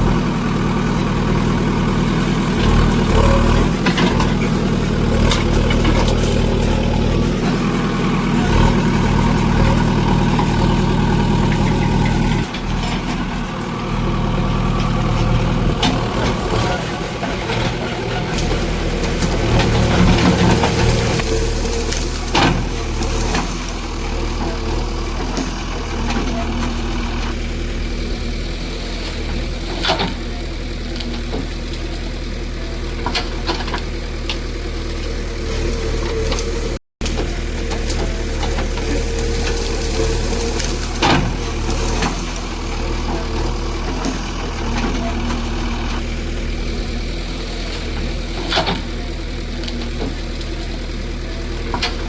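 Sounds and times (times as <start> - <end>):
engine idling: 0.0 - 52.0.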